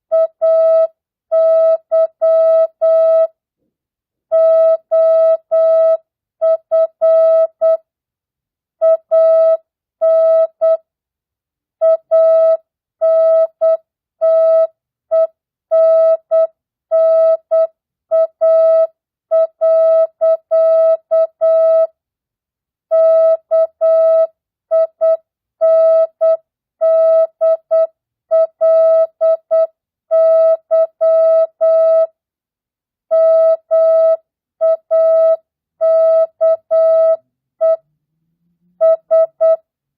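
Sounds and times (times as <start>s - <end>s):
morse code tone: 0.1s - 3.3s, 4.3s - 7.8s, 8.8s - 10.8s, 11.8s - 21.9s, 22.9s - 32.1s, 33.1s - 37.9s, 38.8s - 39.6s.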